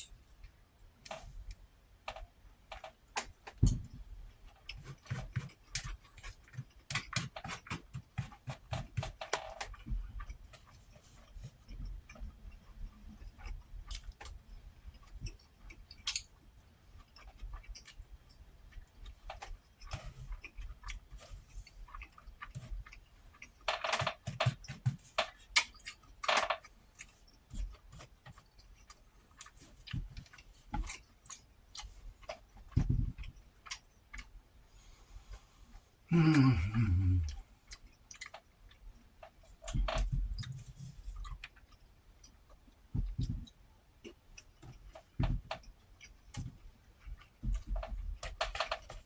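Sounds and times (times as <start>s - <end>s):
chewing and wet mouth sounds: 4.4s - 49.0s
mouth smacks: 36.1s - 37.4s.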